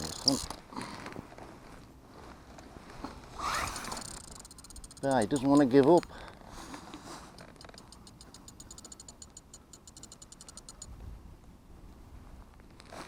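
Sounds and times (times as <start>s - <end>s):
fishing reel clicking rapidly: 0.0s - 0.6s, 3.4s - 6.0s, 7.4s - 10.9s.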